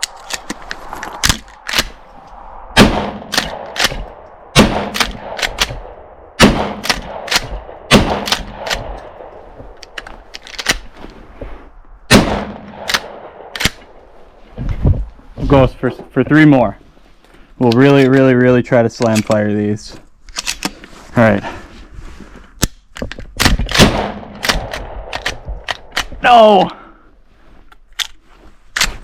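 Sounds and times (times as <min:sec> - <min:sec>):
shotgun shots: 0:02.8 - 0:09.2, 0:12.1 - 0:13.8, 0:23.4 - 0:25.4
shotgun pump action clacking: 0:04.9 - 0:05.9, 0:22.6 - 0:26.2.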